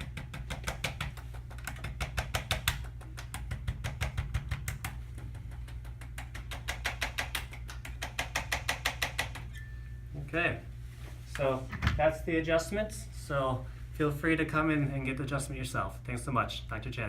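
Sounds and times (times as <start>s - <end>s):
steady low hum: 0.0s - 17.0s
adjusting instrument rapid clicks: 0.1s - 9.4s.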